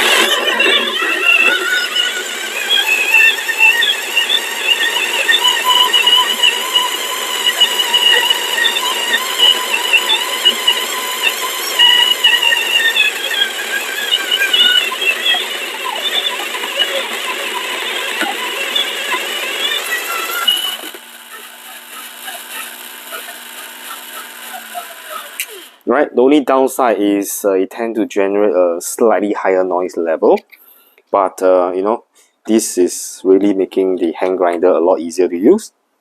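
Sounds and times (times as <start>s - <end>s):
grinder motor whine: 0.0s - 25.9s.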